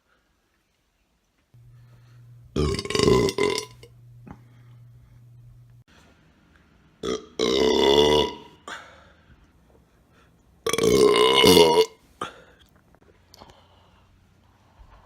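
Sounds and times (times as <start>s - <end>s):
person burping: 2.5s - 4.4s, 7.0s - 8.8s, 10.7s - 12.4s.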